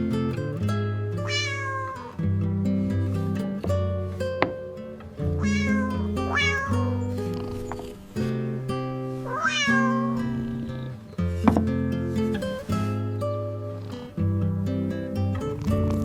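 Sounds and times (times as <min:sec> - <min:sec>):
cat meowing: 0:01.2 - 0:02.1, 0:05.4 - 0:07.9, 0:09.2 - 0:10.9.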